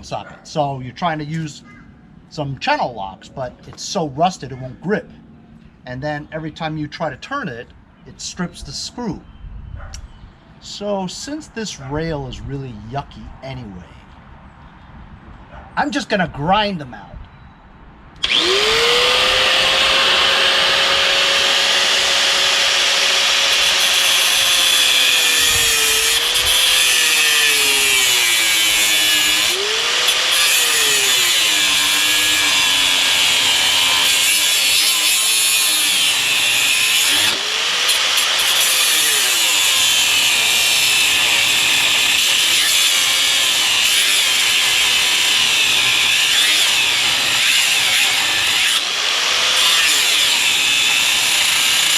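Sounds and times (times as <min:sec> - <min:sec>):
electric grinder grinding metal: 0:18.2 - 0:51.9.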